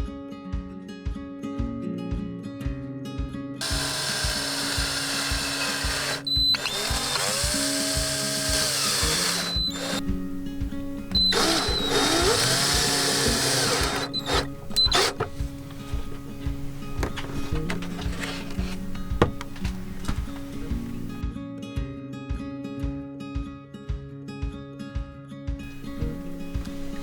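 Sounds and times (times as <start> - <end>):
background music with steady beat: 0.0 - 27.0
power drill motor whine: 3.6 - 21.2, 25.7 - 27.0.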